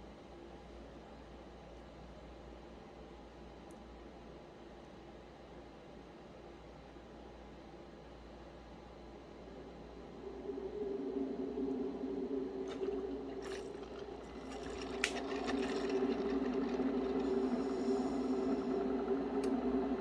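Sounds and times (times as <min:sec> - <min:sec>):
coffee maker pump humming: 0:11.1 - 0:20.0.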